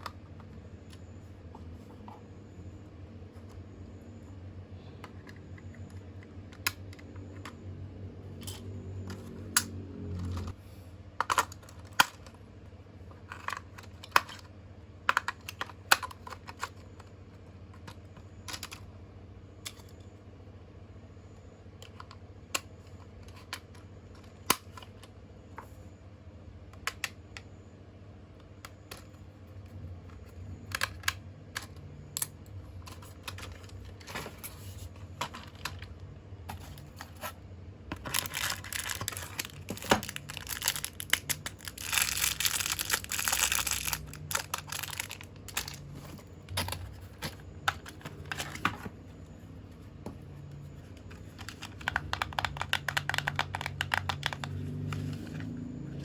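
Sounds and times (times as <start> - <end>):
low steady hum: 0.0 - 56.0
plastic toy parts clicking: 38.0 - 45.8, 51.1 - 55.1.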